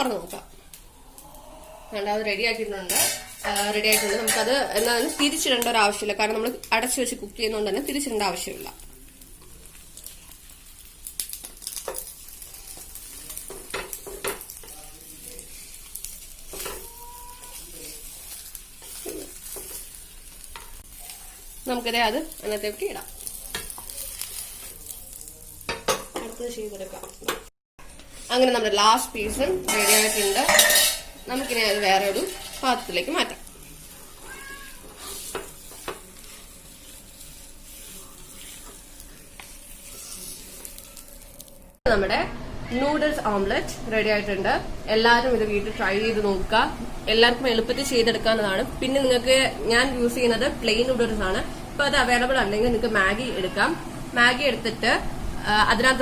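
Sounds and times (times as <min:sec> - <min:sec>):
omelette sizzling in oil: 0:00.0 - 0:27.3, 0:27.9 - 0:41.8
utensil clattering against pan: 0:29.7 - 0:32.9.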